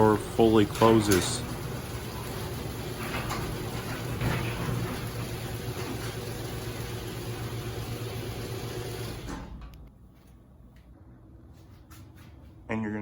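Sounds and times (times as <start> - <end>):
garage door opener motor hum: 0.0 - 9.9.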